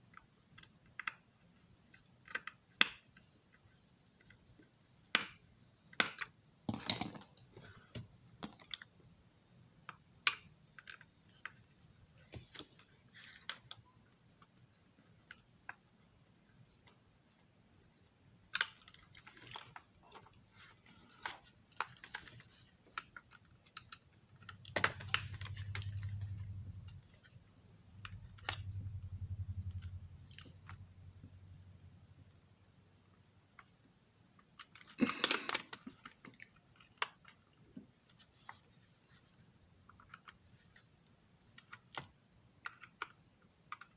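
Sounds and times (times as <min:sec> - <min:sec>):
low steady hum: 0:00.0 - 0:43.9
tiny parts clicking and rattling: 0:18.4 - 0:30.8.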